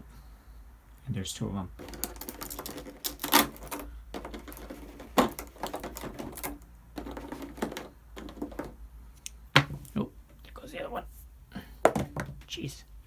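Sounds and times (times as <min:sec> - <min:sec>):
plastic packaging clicking and crackling: 0:01.8 - 0:08.8.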